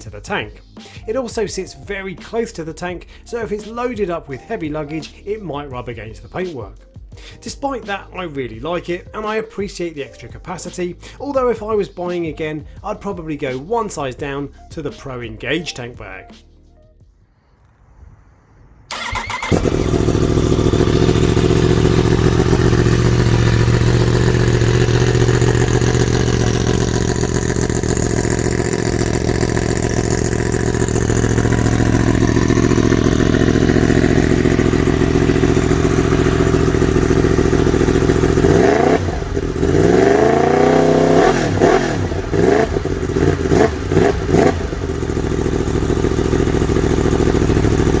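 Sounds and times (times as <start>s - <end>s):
motorcycle engine idling and revving: 18.9s - 48.0s.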